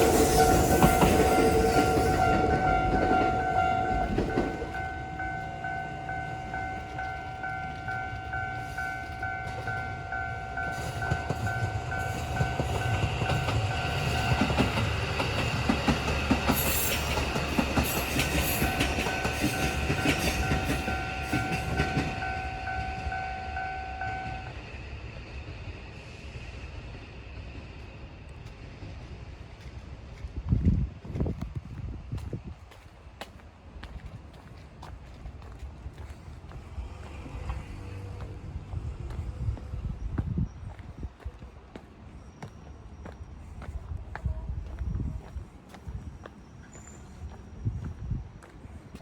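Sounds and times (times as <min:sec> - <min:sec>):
level-crossing warning bell: 0:00.0 - 0:24.6
train wheels rumbling and clacking: 0:00.0 - 0:49.0.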